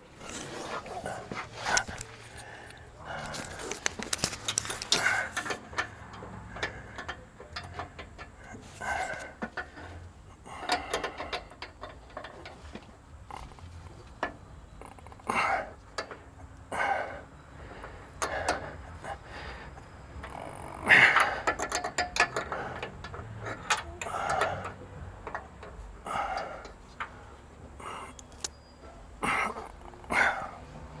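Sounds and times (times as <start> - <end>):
hand tools clicking on metal: 0.1 - 12.6, 21.1 - 27.1.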